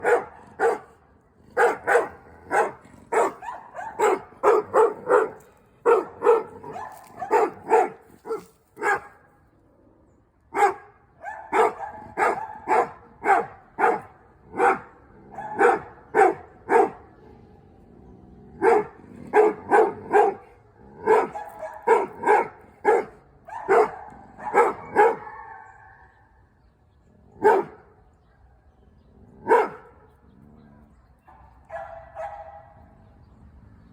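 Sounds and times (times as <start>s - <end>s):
dogs barking: 0.0s - 9.3s, 10.5s - 17.2s, 18.6s - 26.4s, 27.4s - 28.0s, 29.4s - 30.1s, 31.2s - 33.0s.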